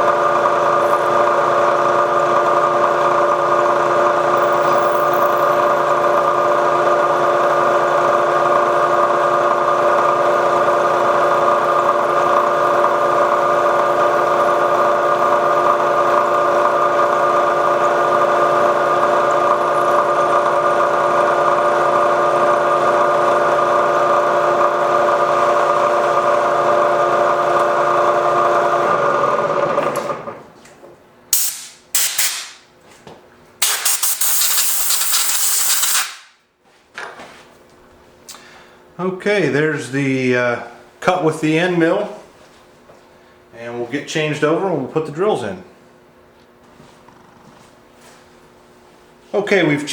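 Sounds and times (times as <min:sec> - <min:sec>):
milling machine running: 0:00.0 - 0:30.2
short hissing bursts: 0:31.3 - 0:32.6, 0:33.6 - 0:36.4.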